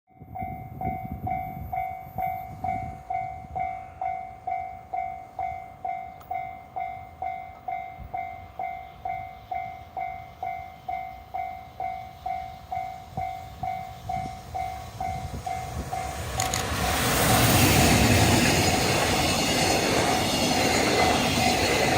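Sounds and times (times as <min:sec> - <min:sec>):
level crossing warning bell: 0:00.1 - 0:16.6
train rumbling: 0:00.2 - 0:21.9.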